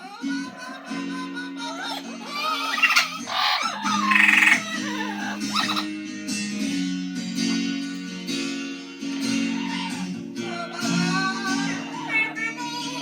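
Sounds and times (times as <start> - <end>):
acoustic guitar strumming chords: 4.6 - 13.0.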